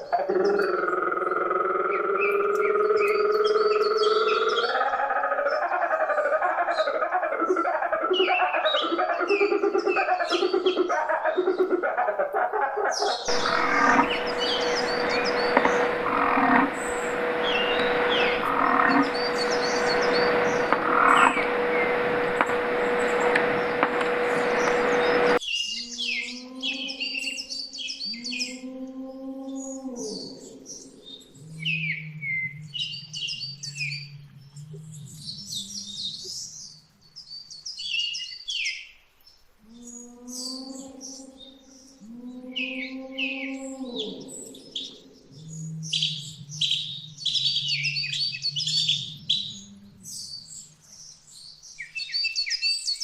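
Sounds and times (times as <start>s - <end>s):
small birds chirping: 0.0s - 11.7s, 12.9s - 28.6s, 29.6s - 53.0s
low drawn-out calls: 13.2s - 25.4s
loud rushing noise: 13.3s - 25.4s
low steady drone: 13.3s - 25.4s
steady hum: 13.3s - 25.4s.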